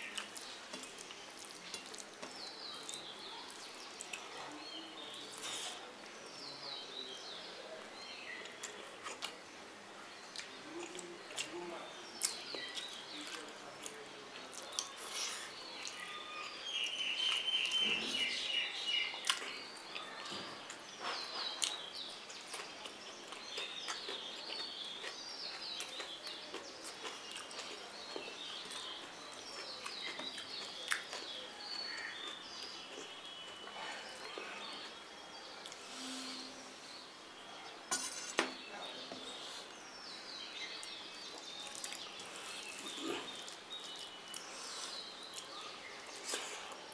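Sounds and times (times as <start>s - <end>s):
small birds chirping: 0.0s - 46.9s
eating clicks and smacks: 28.6s - 31.3s.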